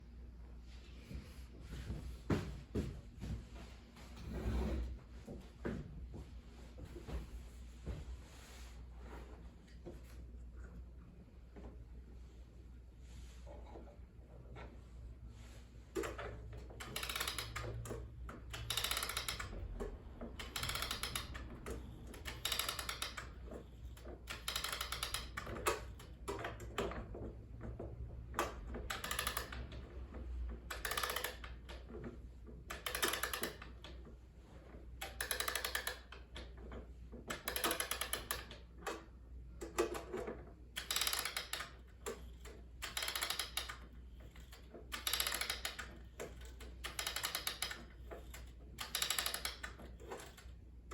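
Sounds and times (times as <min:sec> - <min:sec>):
clock winding ratchet clicks: 0:16.0 - 0:26.7, 0:28.4 - 0:29.8, 0:30.7 - 0:31.8, 0:32.7 - 0:33.9, 0:35.0 - 0:36.5, 0:37.3 - 0:39.0, 0:40.8 - 0:50.6.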